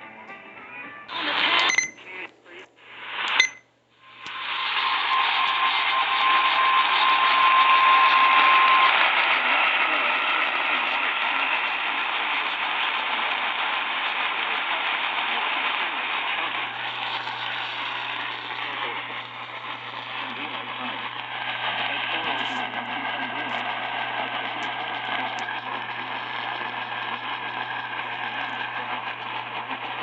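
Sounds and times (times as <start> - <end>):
radio static crackles: 1.1 - 4.8, 8.0 - 30.0
loud radio hiss: 1.1 - 30.0.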